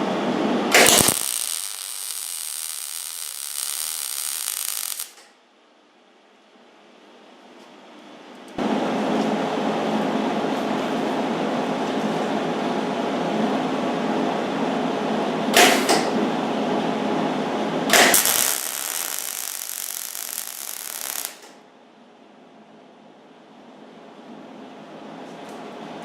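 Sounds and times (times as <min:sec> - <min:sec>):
welding arc crackling: 0:00.7 - 0:05.3, 0:17.9 - 0:21.6.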